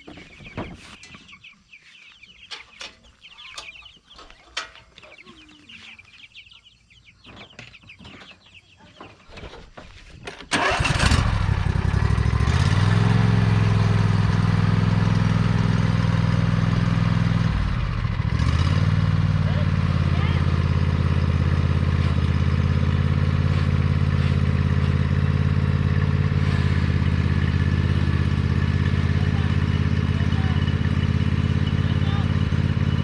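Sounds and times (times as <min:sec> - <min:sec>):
chickens calling: 0:00.0 - 0:17.8, 0:19.0 - 0:33.0
lawnmower engine running: 0:10.4 - 0:33.0.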